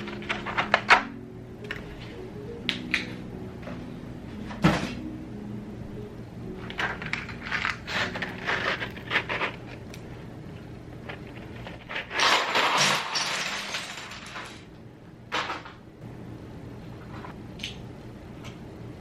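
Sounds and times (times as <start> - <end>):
plastic keycaps clattering: 6.7 - 9.9.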